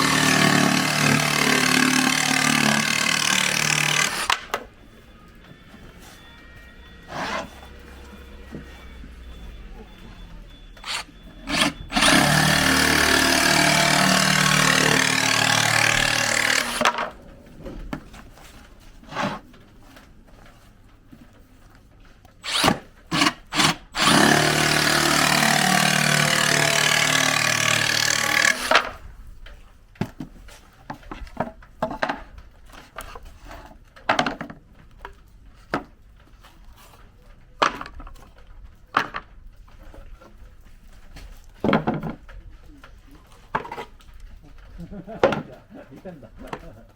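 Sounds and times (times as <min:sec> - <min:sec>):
reciprocating saw cutting plywood: 0:00.0 - 0:04.7, 0:05.8 - 0:10.0, 0:10.8 - 0:17.2, 0:22.4 - 0:29.0
knocks and clatter of board: 0:30.0 - 0:35.9, 0:37.6 - 0:40.4, 0:41.0 - 0:42.4, 0:43.5 - 0:44.0, 0:44.6 - 0:45.7.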